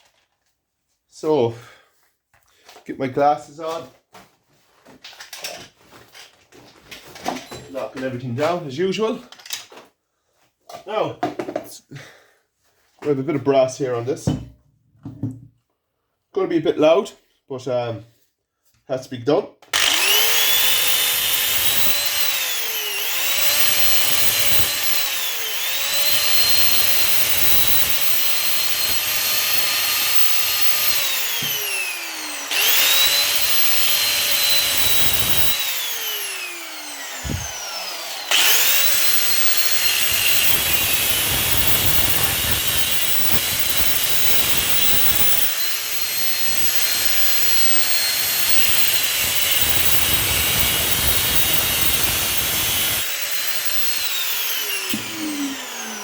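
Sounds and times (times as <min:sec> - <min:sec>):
angle grinder cutting metal: 0:19.8 - 0:56.0.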